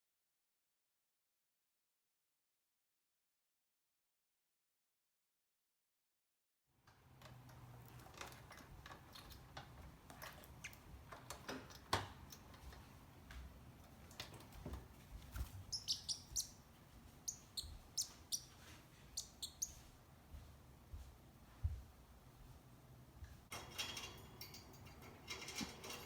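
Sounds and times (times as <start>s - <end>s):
parrot high chirps: 15.7s - 16.6s, 17.2s - 19.8s.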